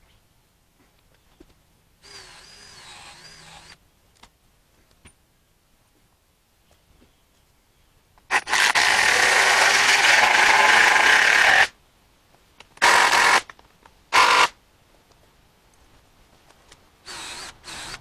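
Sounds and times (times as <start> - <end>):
power drill running: 2.0 - 3.8, 8.3 - 11.7, 12.8 - 13.4, 14.2 - 14.5, 17.1 - 18.0.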